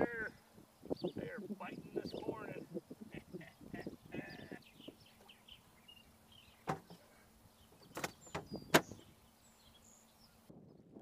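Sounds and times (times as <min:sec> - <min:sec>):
faint bird chirps: 0:00.0 - 0:10.9
sharp knocks and clicks: 0:06.6 - 0:07.0, 0:07.8 - 0:08.9.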